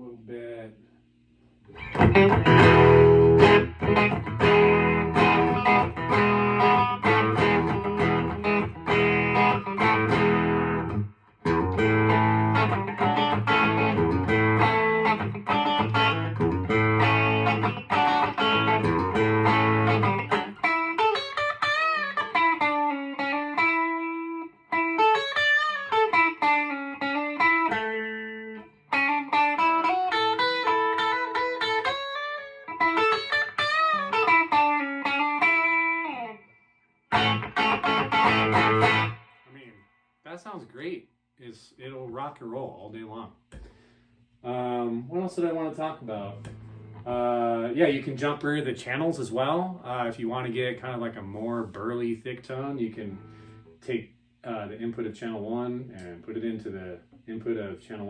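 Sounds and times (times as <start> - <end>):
overdriven electric guitar: 1.7 - 39.6, 46.4 - 47.1.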